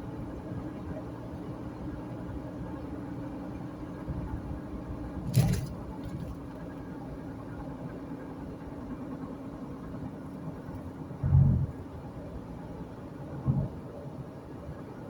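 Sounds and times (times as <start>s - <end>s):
car engine and road noise: 0.0s - 15.0s.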